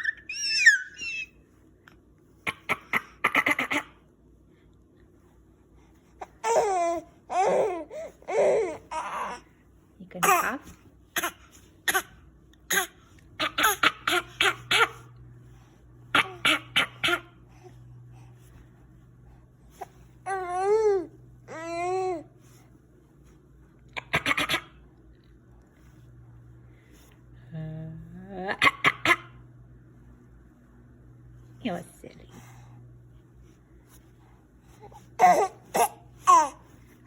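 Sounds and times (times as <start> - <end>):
child coughing: 11.2 - 15.1, 16.1 - 17.4, 24.0 - 24.8, 28.6 - 29.3.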